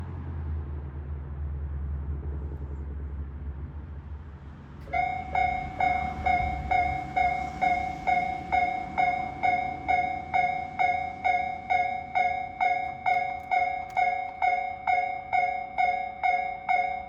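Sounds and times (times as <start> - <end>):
level crossing bell two-tone ding: 4.9 - 17.0.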